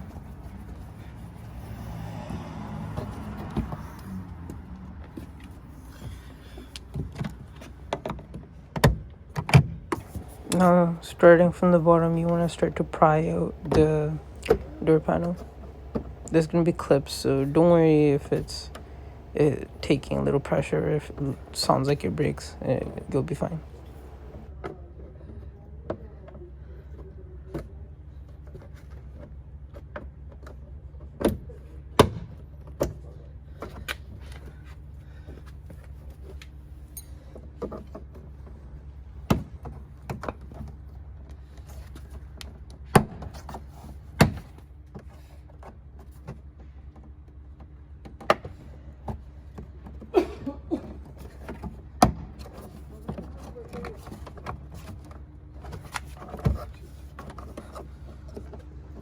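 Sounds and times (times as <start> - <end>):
steady low hum: 0.0 - 9.2, 9.8 - 27.3.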